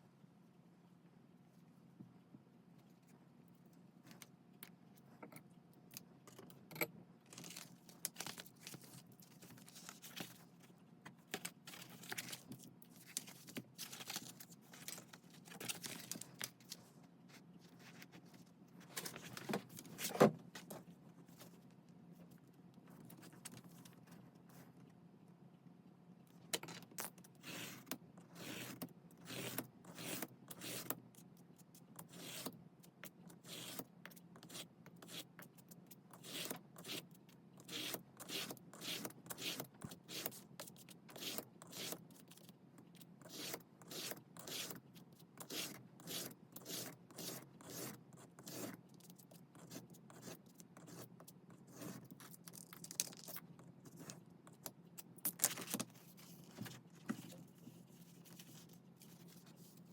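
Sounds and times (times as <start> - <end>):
scraping and rubbing on paper: 45.4 - 54.2, 55.6 - 59.9.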